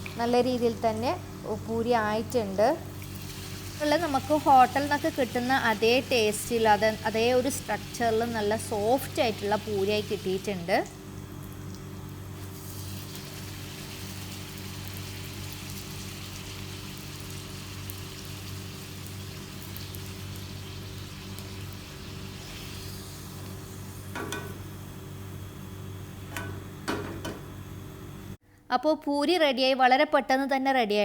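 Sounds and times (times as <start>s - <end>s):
low steady hum: 0.0s - 16.3s
deep-frying sizzle in oil: 0.0s - 26.3s.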